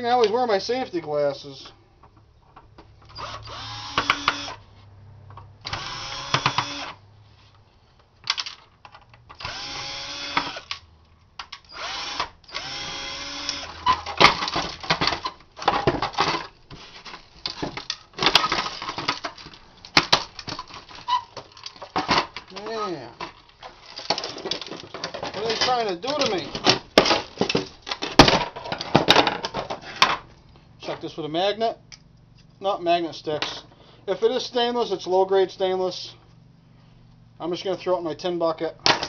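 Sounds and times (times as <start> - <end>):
power drill bursts: 3.2 - 4.6, 5.7 - 7.0, 9.4 - 10.8, 11.7 - 14.2
sharp clicks and cracks: 17.1 - 29.6.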